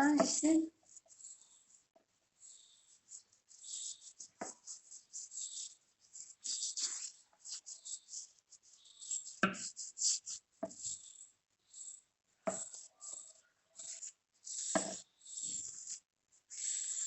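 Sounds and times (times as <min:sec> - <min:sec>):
scrub rubbed over hands: 0:06.0 - 0:08.6.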